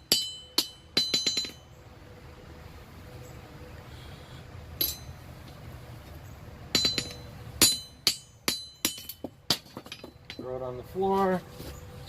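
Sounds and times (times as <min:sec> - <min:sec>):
hammer striking metal on anvil: 0:00.0 - 0:01.7, 0:04.8 - 0:05.2, 0:06.7 - 0:10.4
steady low hum: 0:00.0 - 0:12.0.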